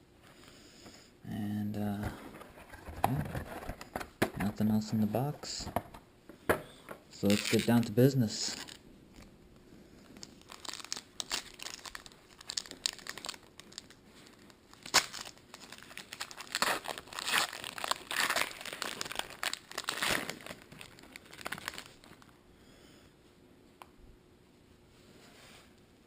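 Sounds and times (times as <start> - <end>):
wrapper crinkling: 7.2 - 9.3, 10.1 - 22.4.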